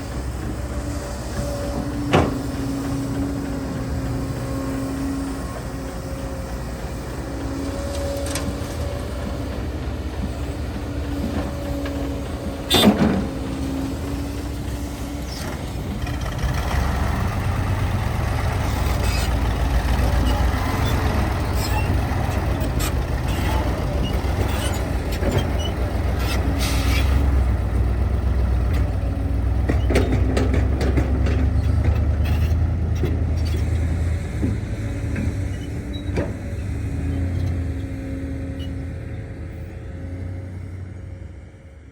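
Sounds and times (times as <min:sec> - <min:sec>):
diesel engines rumbling: 0:00.0 - 0:41.9
knocks and clanks: 0:00.4 - 0:04.4, 0:07.4 - 0:13.8, 0:29.6 - 0:36.6.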